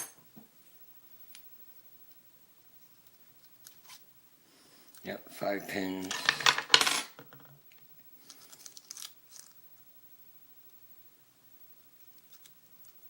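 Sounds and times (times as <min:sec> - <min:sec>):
lock parts clicking and scraping: 0:05.7 - 0:07.6.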